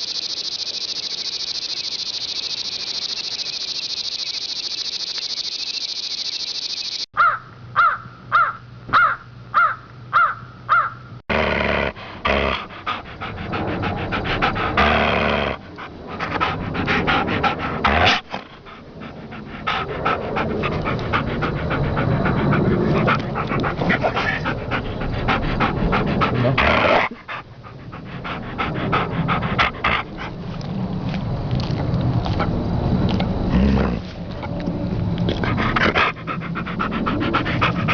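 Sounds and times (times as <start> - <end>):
crickets chirping: 0.0 - 7.1, 12.3 - 37.9
dog noises: 12.2 - 30.8, 35.2 - 37.9.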